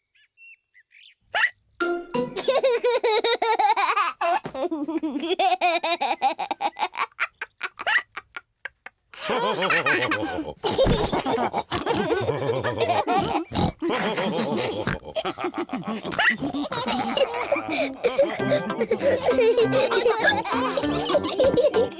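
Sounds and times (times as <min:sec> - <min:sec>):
cartoon characters laughing: 0:02.3 - 0:21.9.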